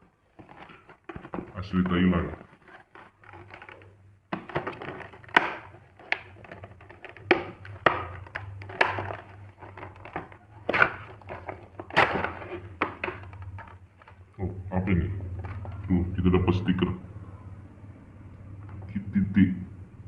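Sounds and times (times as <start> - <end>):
packaging crackling and rustling: 0.0 - 14.4, 15.3 - 15.9.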